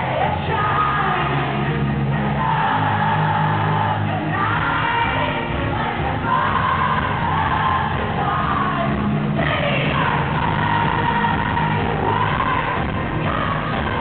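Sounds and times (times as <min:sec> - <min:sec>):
band playing pop music: 0:00.0 - 0:14.0
crowd singing along: 0:00.0 - 0:14.0
woman singing: 0:00.0 - 0:14.0.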